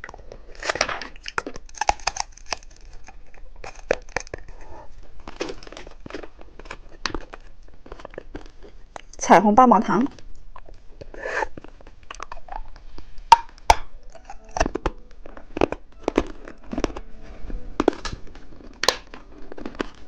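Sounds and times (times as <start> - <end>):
hard candy crunching: 0.0 - 9.2, 10.0 - 20.0.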